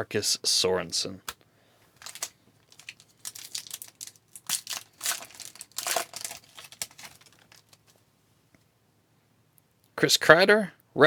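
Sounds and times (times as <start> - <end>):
foil wrapper tearing and crinkling: 2.0 - 8.0.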